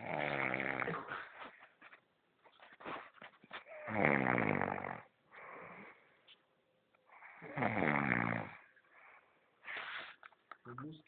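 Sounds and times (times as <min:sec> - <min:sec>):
person snoring: 0:00.0 - 0:01.5, 0:03.6 - 0:06.0, 0:07.1 - 0:08.7
faint breath: 0:05.3 - 0:06.4, 0:08.8 - 0:10.3.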